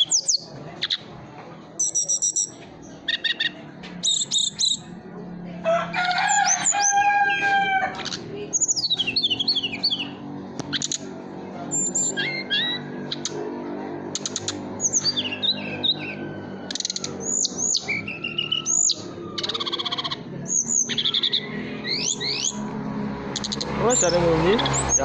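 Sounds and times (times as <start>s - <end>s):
small bird chirping and whistling: 0.0s - 1.0s, 1.8s - 4.9s, 8.0s - 11.0s, 11.7s - 13.4s, 14.1s - 22.6s, 23.4s - 25.0s
rooster crowing: 5.6s - 8.0s, 21.3s - 22.2s.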